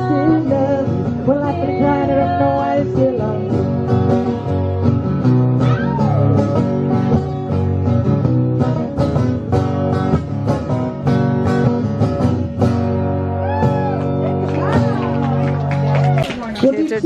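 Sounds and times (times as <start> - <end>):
acoustic guitar strumming: 0.0 - 17.0.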